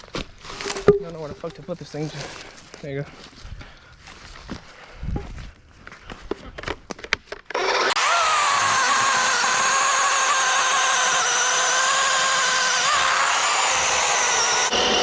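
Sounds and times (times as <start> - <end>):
electric chainsaw cutting log: 7.4 - 15.0.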